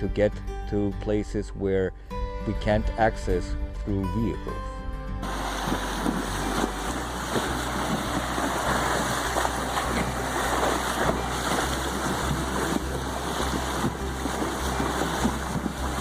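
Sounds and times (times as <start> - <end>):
wind noise on microphone: 2.2 - 16.0
water splashing and rushing: 5.2 - 16.0.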